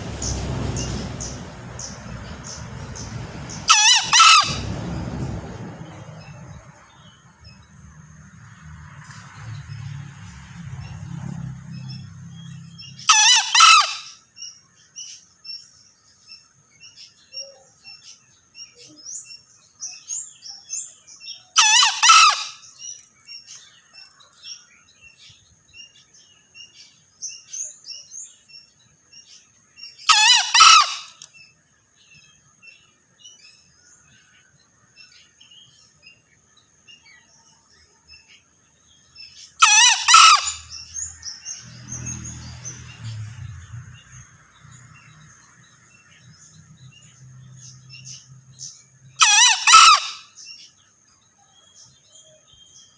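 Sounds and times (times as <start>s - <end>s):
junglefowl crowing: 3.6s - 4.7s, 13.0s - 14.2s, 21.6s - 22.7s, 30.1s - 31.3s, 39.6s - 40.8s, 49.2s - 50.4s
faint small-bird chirps: 16.8s - 21.5s.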